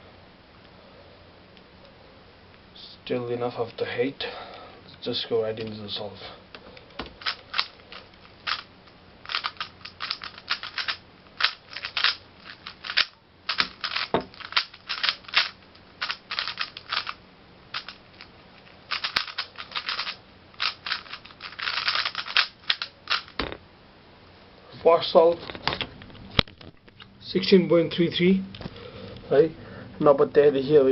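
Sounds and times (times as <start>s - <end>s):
plastic puzzle cube clicking turns: 7.2s - 8.7s, 9.3s - 17.2s, 18.9s - 23.4s.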